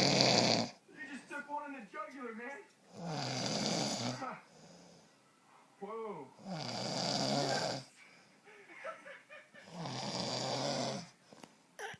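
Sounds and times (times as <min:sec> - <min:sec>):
man snoring: 0:00.0 - 0:00.8, 0:03.0 - 0:04.3, 0:06.4 - 0:07.9, 0:09.6 - 0:11.1.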